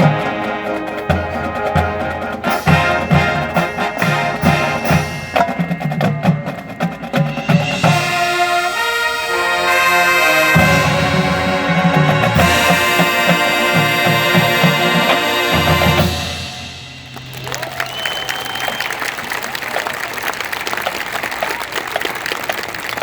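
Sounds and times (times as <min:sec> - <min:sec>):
brass and winds chords: 0:00.0 - 0:17.2
marching band playing: 0:00.0 - 0:23.0.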